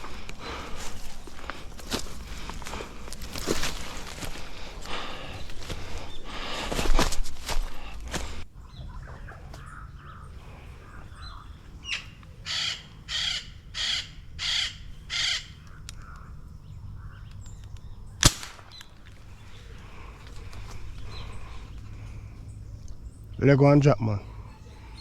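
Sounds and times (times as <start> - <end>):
bird giving harsh calls: 0.0 - 16.4
air rifle shot: 18.2 - 18.8.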